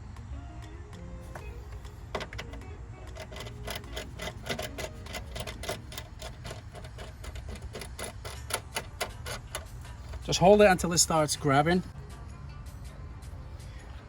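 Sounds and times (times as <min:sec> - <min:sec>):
low steady hum: 0:00.0 - 0:14.0
hand ratchet clicking: 0:02.1 - 0:10.8.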